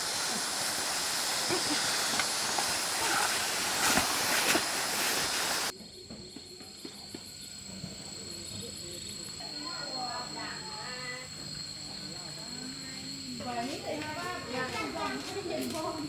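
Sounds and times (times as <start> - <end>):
rushing stream water: 0.0 - 5.7.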